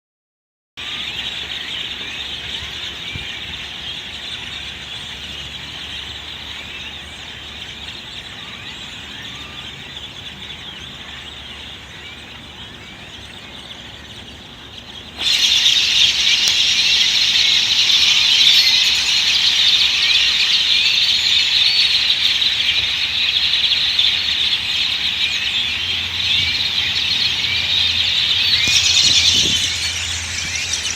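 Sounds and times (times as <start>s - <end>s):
flock of birds chattering: 0.8s - 30.9s.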